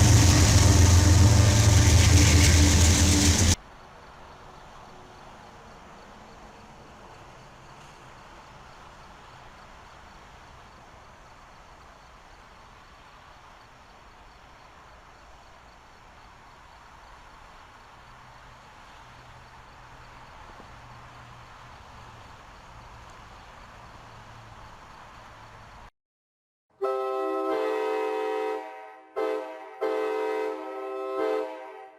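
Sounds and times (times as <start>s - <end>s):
low hum: 0.0s - 3.6s
insects chirping: 0.0s - 25.9s.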